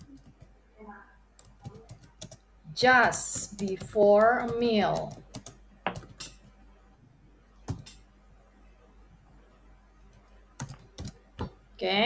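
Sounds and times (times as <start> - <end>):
faint steady hum: 0.0 - 12.0
keyboard keystrokes: 3.4 - 6.4, 7.7 - 8.0, 10.6 - 11.5.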